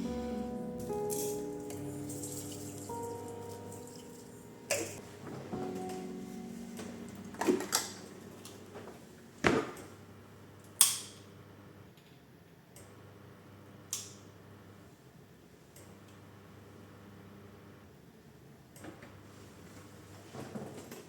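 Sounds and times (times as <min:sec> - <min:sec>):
low steady hum: 0:00.0 - 0:11.8.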